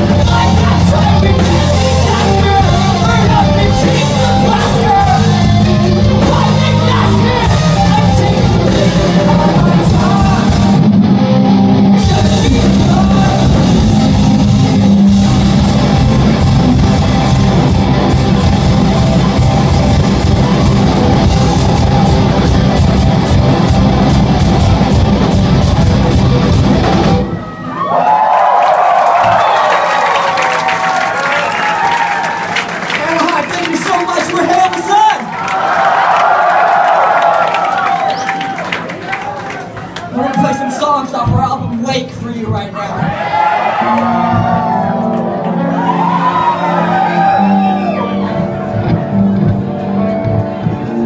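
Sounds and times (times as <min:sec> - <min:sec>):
rock band playing live: 0:00.0 - 0:27.7, 0:37.3 - 0:51.0
crowd applauding and cheering: 0:13.1 - 0:25.0, 0:27.0 - 0:41.2, 0:42.9 - 0:51.0.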